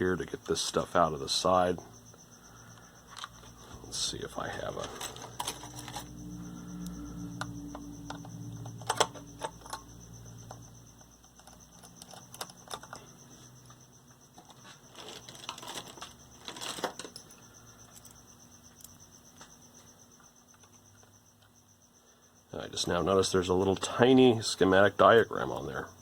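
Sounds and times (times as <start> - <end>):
low hum: 1.1 - 21.9.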